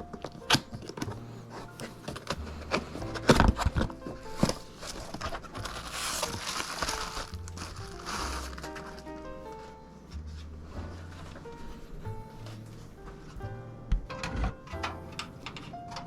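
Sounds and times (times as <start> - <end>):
plastic crinkling: 0.0 - 9.8
background music with held notes: 0.0 - 16.0.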